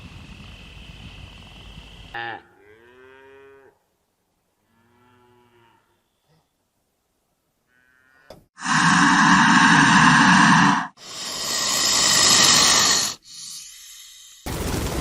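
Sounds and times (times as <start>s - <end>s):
cow mooing: 2.2s - 3.8s, 4.7s - 6.0s, 7.7s - 8.3s
steady hissing noise: 8.6s - 14.5s.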